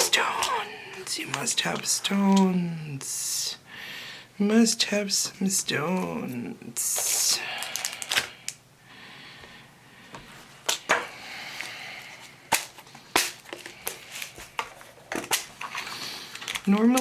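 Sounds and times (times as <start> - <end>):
plastic containers clicking: 16.4 - 17.0.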